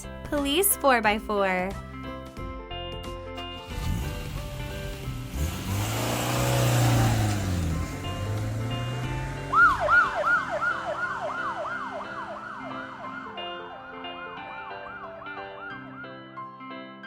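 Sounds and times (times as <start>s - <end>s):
police siren yelping: 9.4s - 16.1s.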